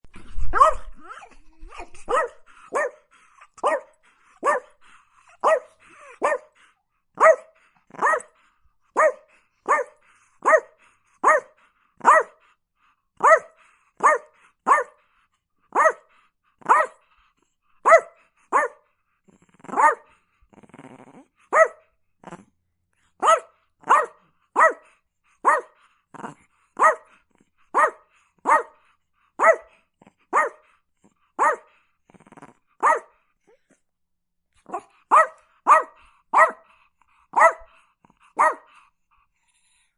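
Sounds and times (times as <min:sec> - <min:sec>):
dog barking: 0:00.5 - 0:00.9, 0:02.0 - 0:06.6, 0:07.2 - 0:08.4, 0:09.0 - 0:12.4, 0:13.2 - 0:15.0, 0:15.7 - 0:17.0, 0:17.8 - 0:18.9, 0:19.7 - 0:20.1, 0:21.5 - 0:21.9, 0:23.2 - 0:25.8, 0:26.8 - 0:28.8, 0:29.4 - 0:30.7, 0:31.4 - 0:31.7, 0:32.8 - 0:33.2, 0:34.7 - 0:36.7, 0:37.3 - 0:38.8.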